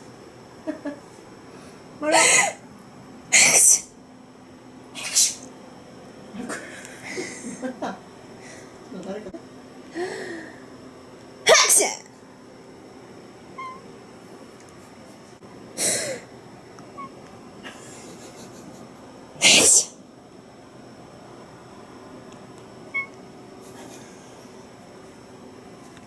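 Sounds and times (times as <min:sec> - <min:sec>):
person sneezing: 0:02.1 - 0:02.6, 0:03.4 - 0:03.8, 0:05.0 - 0:05.4, 0:11.5 - 0:12.0, 0:19.4 - 0:20.0
cat mewing: 0:13.6 - 0:13.8, 0:17.0 - 0:17.2, 0:22.9 - 0:23.2.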